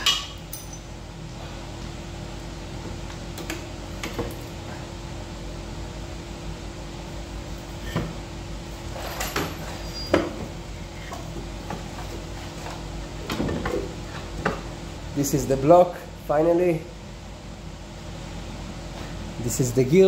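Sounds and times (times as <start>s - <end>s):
metallic knocks and clinks of tools: 0.0s - 0.9s
steady low hum: 0.0s - 20.0s.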